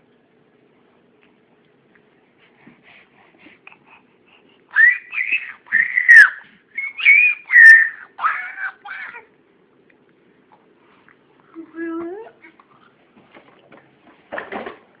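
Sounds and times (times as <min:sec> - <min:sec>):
puppy whining: 0:04.8 - 0:08.6.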